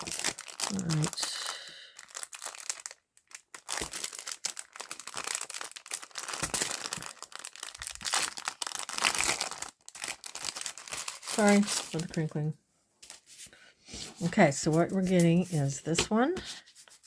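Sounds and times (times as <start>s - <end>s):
packaging crinkling and rustling: 0.0s - 12.4s.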